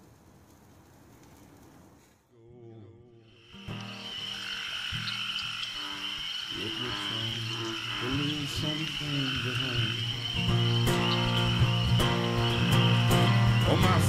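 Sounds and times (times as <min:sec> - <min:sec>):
insects trilling: 0:03.1 - 0:14.0
frogs croaking: 0:03.2 - 0:14.0.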